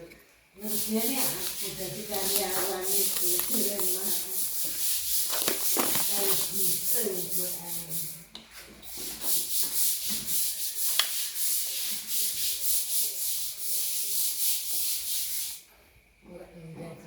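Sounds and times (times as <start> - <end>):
rapid rubbing or scraping strokes: 0.6 - 8.2.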